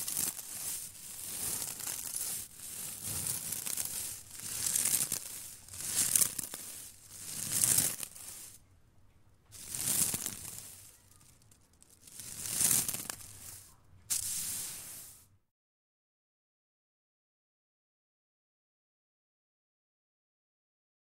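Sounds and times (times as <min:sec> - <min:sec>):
straw broom sweeping: 0:00.0 - 0:08.7, 0:09.5 - 0:15.3.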